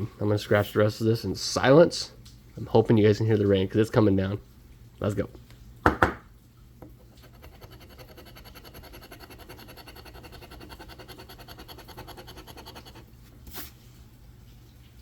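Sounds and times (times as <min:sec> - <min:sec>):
lottery ticket being scratched: 0:07.1 - 0:13.1.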